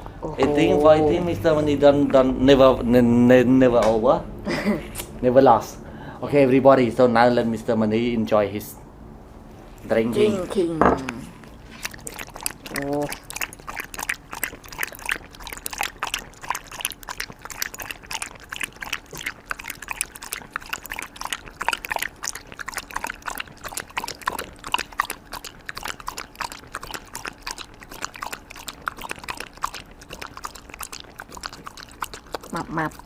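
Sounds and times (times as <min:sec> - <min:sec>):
dog lapping water: 0:11.4 - 0:33.0.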